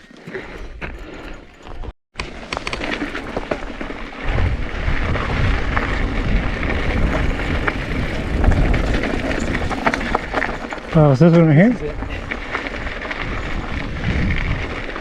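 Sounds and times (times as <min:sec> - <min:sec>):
bike rattling over rocky trail: 0:00.0 - 0:15.0
wind buffeting microphone: 0:04.1 - 0:15.0.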